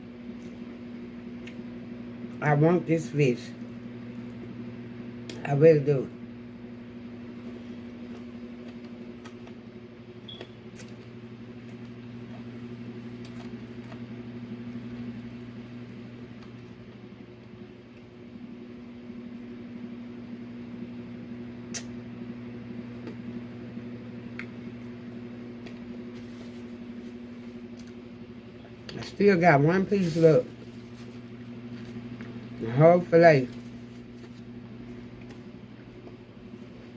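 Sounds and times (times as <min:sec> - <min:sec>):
low mechanical hum: 0:00.0 - 0:36.9
person eating: 0:27.6 - 0:28.1, 0:34.0 - 0:36.2.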